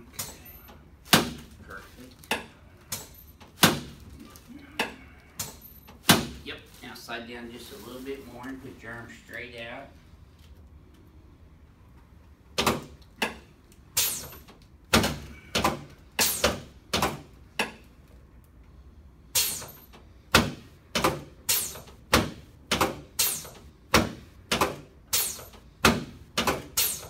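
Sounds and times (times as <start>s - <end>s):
sharp chiropractic knocks: 22.1s - 24.9s, 25.8s - 26.9s.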